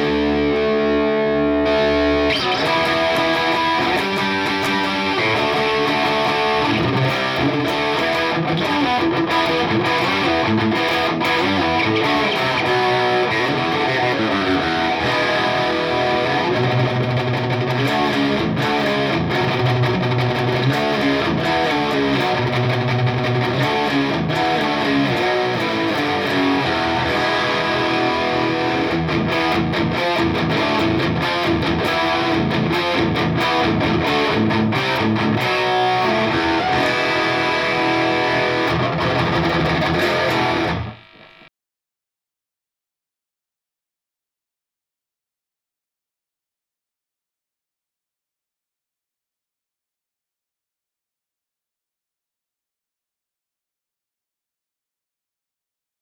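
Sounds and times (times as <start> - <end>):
distorted electric guitar: 0.0 - 41.5.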